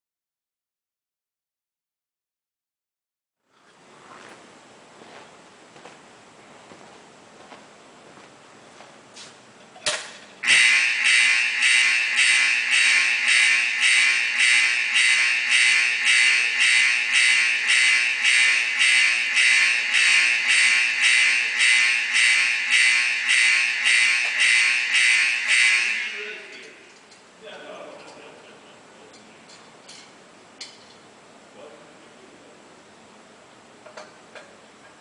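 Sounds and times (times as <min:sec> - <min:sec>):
fire alarm pulsing: 0:10.4 - 0:26.6.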